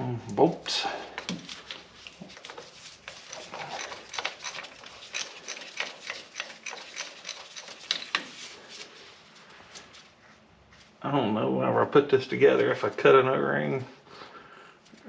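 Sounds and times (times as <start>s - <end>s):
hand ratchet clicking: 2.4s - 8.4s.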